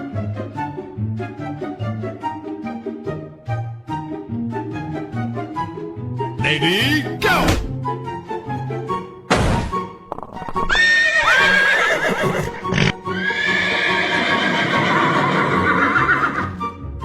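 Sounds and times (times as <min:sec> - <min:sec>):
background music: 0:00.0 - 0:17.0.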